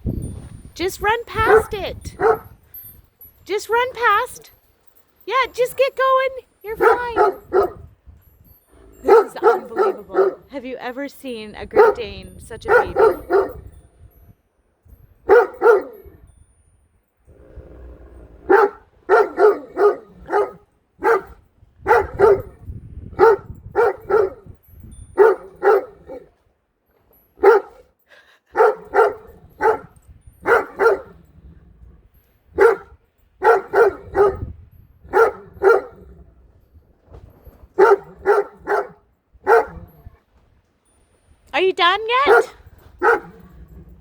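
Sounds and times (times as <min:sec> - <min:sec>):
dog barking deeply: 0:01.5 - 0:02.5, 0:06.8 - 0:07.8, 0:09.0 - 0:10.5, 0:12.7 - 0:13.6, 0:15.3 - 0:16.1, 0:17.7 - 0:24.5, 0:25.2 - 0:26.3, 0:27.4 - 0:27.8, 0:28.6 - 0:31.2, 0:32.6 - 0:36.3, 0:37.8 - 0:39.9, 0:42.2 - 0:43.6.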